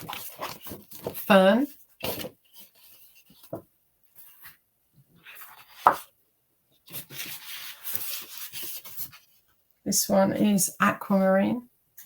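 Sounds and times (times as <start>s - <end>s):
cardstock rustling and shuffling: 0.0s - 6.2s, 6.8s - 9.6s.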